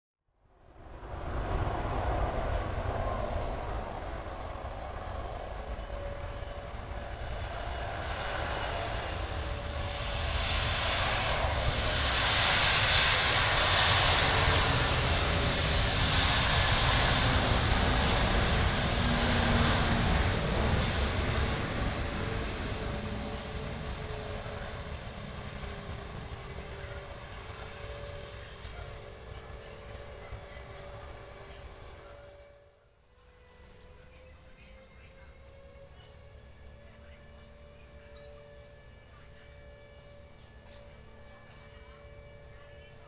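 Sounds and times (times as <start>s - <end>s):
jet engines passing on landing: 0.6s - 32.4s.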